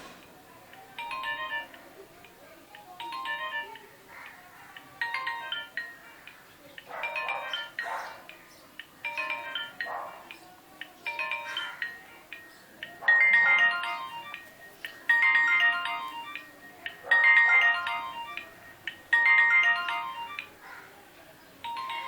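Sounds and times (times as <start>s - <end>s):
phone ringtone beeping notes: 0.9s - 4.0s, 5.0s - 6.0s, 6.9s - 8.0s, 9.0s - 10.0s, 11.0s - 20.6s, 21.6s - 22.0s.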